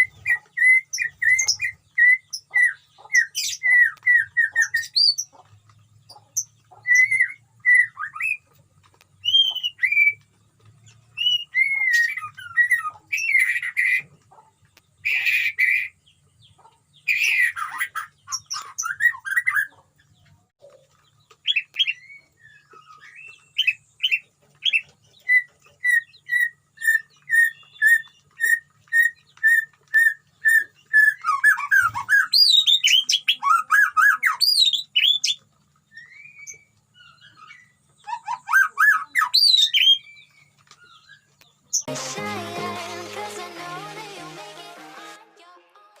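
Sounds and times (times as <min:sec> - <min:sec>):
bird singing whistles and chirps: 0:00.0 - 0:05.2, 0:06.8 - 0:08.4, 0:09.2 - 0:10.2, 0:11.2 - 0:14.0, 0:21.5 - 0:35.4, 0:36.0 - 0:41.2.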